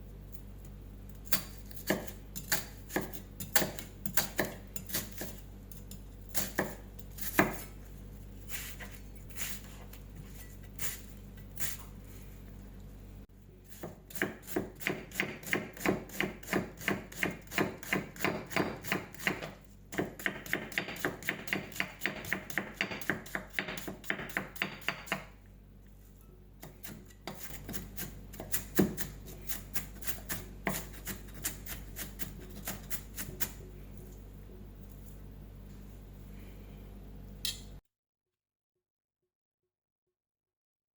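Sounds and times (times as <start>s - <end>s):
knife chopping onion on board: 1.3s - 5.4s, 6.3s - 7.8s, 13.7s - 25.4s, 26.6s - 33.6s.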